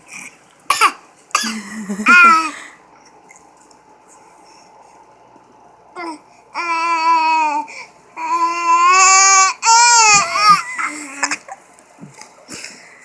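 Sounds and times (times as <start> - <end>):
baby vocalizing: 2.0 - 2.6, 6.0 - 11.6.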